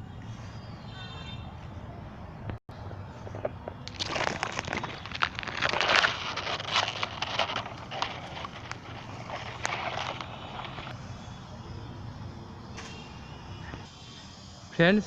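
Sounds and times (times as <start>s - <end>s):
dry debris rustling and crackling: 3.4s - 11.0s.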